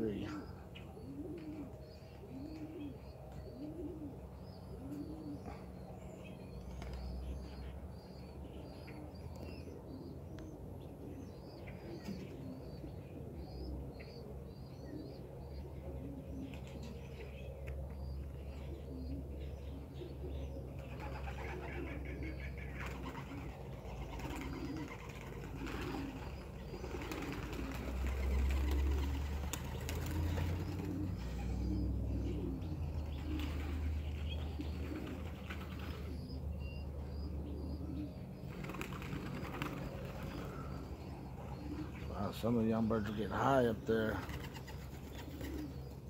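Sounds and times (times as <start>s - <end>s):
pigeons cooing: 0.0s - 46.0s
wings flapping: 22.7s - 31.2s, 33.1s - 36.2s, 38.5s - 40.7s, 44.0s - 45.7s.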